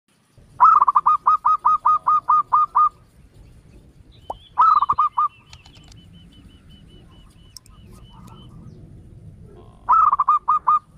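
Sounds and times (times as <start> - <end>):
bird honking calls: 0.6 - 3.2, 4.1 - 8.8, 9.8 - 10.9.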